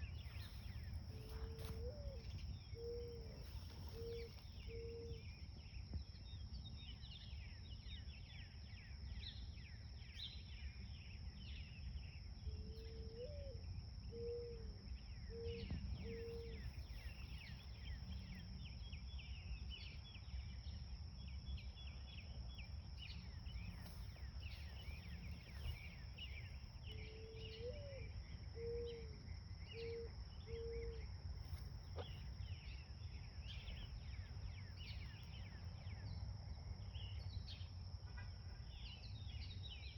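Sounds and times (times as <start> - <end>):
low hooting bird call: 0.0 - 5.4, 12.6 - 17.5, 24.6 - 31.1
small birds chirping: 0.0 - 13.2, 14.1 - 29.0, 29.6 - 36.2.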